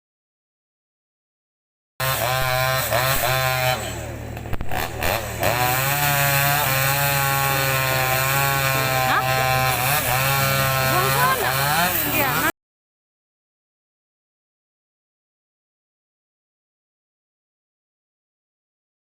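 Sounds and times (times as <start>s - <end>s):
chainsaw running at high revs: 2.0s - 12.5s.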